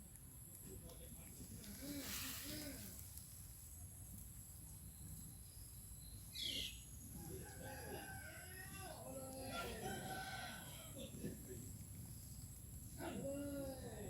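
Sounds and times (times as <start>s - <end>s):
rooster crowing: 7.2s - 11.2s.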